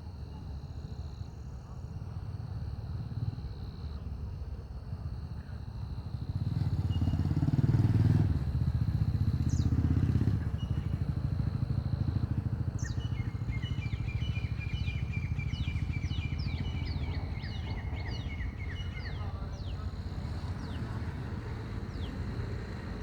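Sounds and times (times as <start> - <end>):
vehicle engine running: 5.9 - 23.0.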